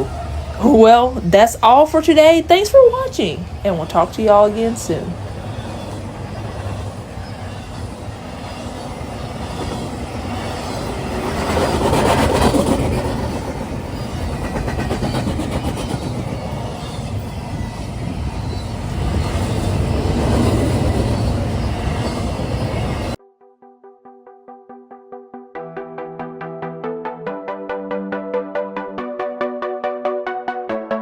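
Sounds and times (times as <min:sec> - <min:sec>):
freight train rumbling past: 0:00.0 - 0:23.2
wheels clicking over rails: 0:00.0 - 0:23.2.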